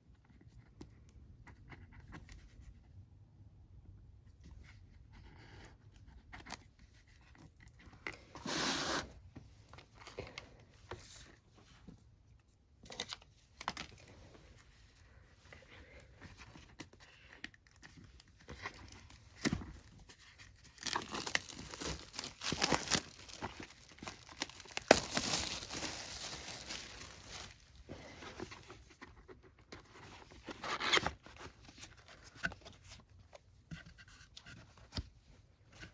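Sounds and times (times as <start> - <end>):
packaging crinkling: 20.5 - 27.8
packaging tearing: 20.6 - 27.6.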